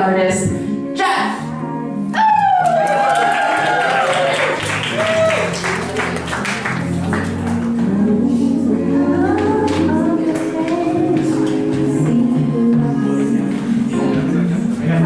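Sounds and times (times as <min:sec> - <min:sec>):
person singing: 0:07.5 - 0:15.0.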